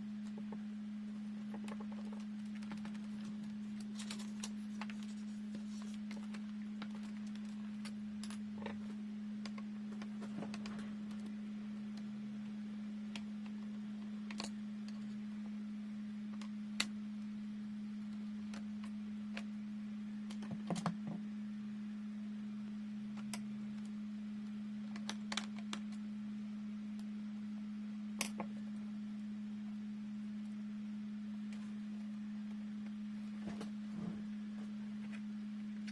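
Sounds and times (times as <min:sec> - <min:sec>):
steady low hum: 0:00.0 - 0:35.9.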